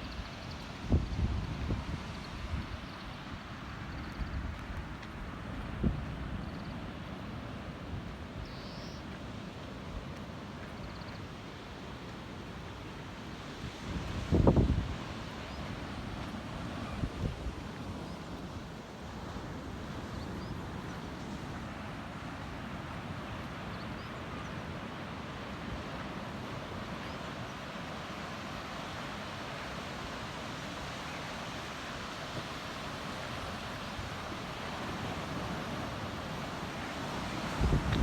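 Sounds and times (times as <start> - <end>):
wind on microphone: 0.0 - 3.0, 13.6 - 18.7, 36.9 - 38.0
ocean surf: 0.0 - 38.0.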